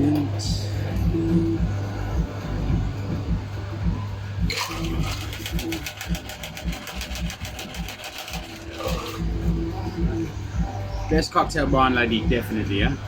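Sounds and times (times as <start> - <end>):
ice rattling in cocktail shaker: 4.5 - 9.3.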